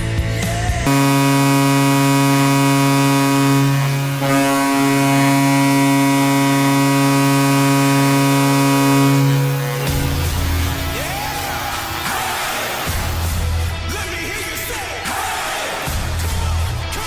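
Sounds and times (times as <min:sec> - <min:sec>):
goal horn blast: 0:00.9 - 0:13.4.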